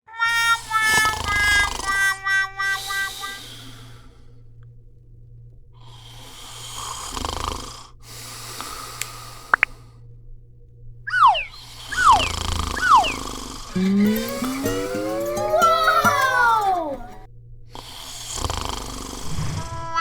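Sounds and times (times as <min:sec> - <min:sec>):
cat snoring: 0:00.7 - 0:02.1, 0:05.9 - 0:09.8, 0:11.5 - 0:14.1, 0:17.8 - 0:19.7
steady low hum: 0:07.6 - 0:14.1
tonal notes: 0:13.8 - 0:17.3.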